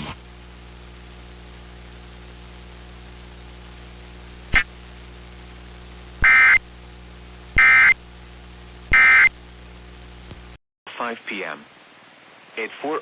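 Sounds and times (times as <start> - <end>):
broadcast hiss and hum: 0.0 - 13.0
electronic data tone bursts: 6.2 - 6.6, 7.6 - 8.0, 8.9 - 9.4.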